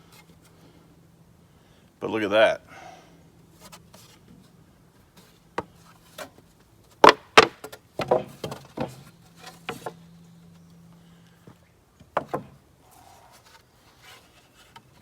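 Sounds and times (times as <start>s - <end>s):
wooden knocks and clacks: 7.0s - 10.0s, 12.0s - 12.6s.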